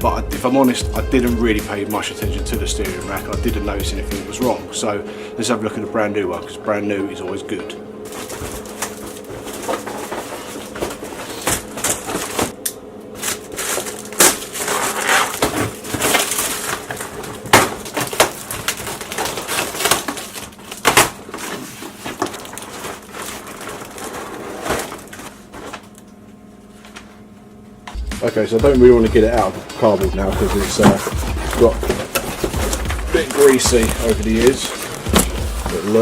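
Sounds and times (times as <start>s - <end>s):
crackling and crinkling: 8.0s - 27.4s, 28.9s - 36.0s
cardboard and wrapping tearing: 8.1s - 12.6s, 13.2s - 25.9s, 29.1s - 36.0s.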